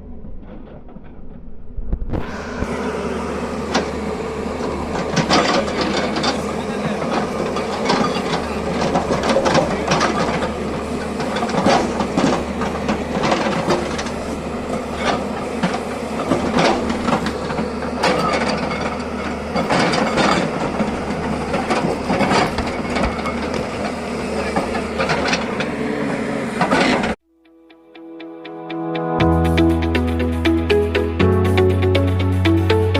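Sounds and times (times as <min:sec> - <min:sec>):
diesel engine running: 0:02.2 - 0:27.2, 0:29.2 - 0:32.9
metallic clanks and knocks: 0:04.6 - 0:25.7.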